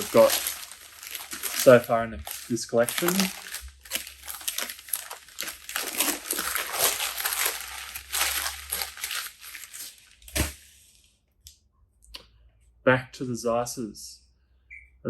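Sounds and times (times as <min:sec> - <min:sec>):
packaging wrap crinkling: 0:00.0 - 0:10.7.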